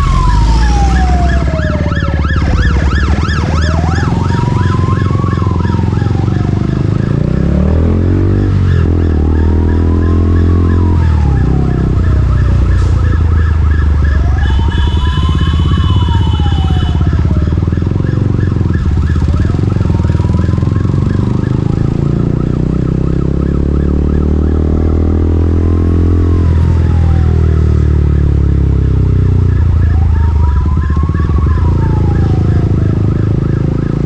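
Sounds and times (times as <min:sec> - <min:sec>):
siren wailing: 0:00.0 - 0:34.0
motorcycle engine running: 0:14.0 - 0:24.2.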